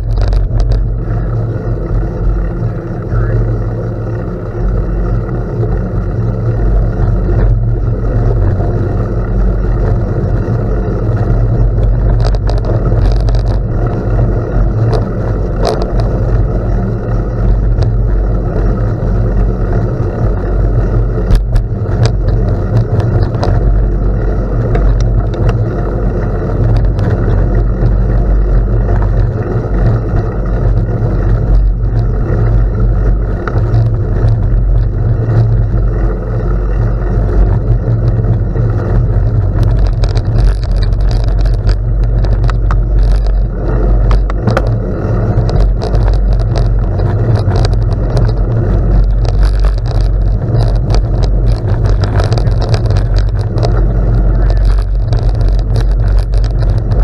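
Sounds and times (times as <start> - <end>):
bicycle tyres rolling on gravel: 0.0 - 57.0
wind buffeting microphone: 0.0 - 57.0.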